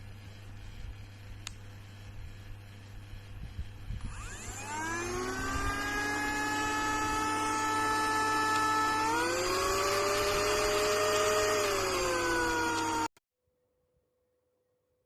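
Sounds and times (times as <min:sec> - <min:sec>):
handheld vacuum cleaner motor whining: 0:04.0 - 0:13.2.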